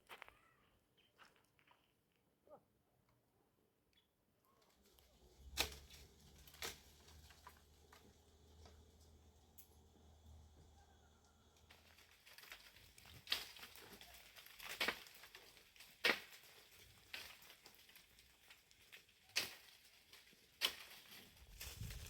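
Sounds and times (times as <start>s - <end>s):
dry twigs cracking: 4.6s - 9.5s, 11.2s - 22.0s
leaves crinkling: 4.6s - 10.3s, 11.4s - 22.0s.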